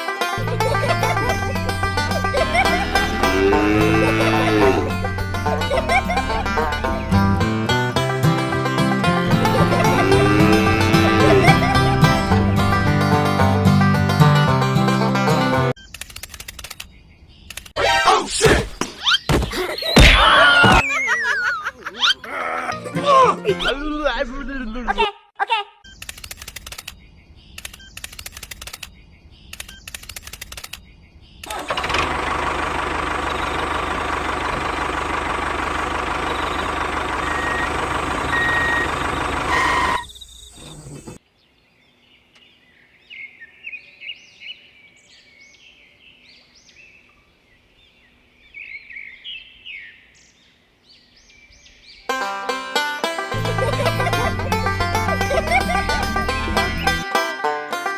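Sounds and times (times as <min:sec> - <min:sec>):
mechanical running noise: 0:31.4 - 0:41.2
birds chirping faintly: 0:36.0 - 0:52.1.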